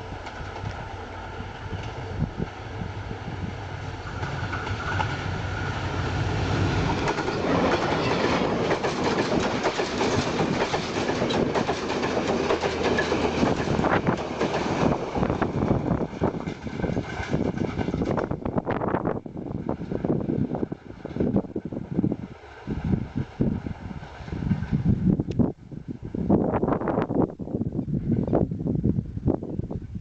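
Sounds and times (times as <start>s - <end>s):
train wheels clattering over rails: 4.0s - 18.4s.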